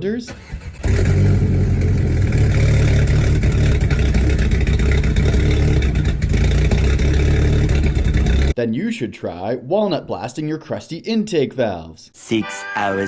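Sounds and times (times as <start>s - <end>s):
rough misfiring car engine: 0.3s - 8.6s.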